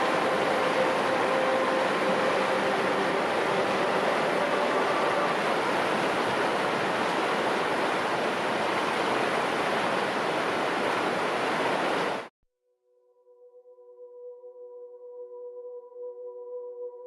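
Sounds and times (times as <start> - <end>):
soft ringing musical tone: 0.0 - 7.0
rushing water: 0.0 - 12.3.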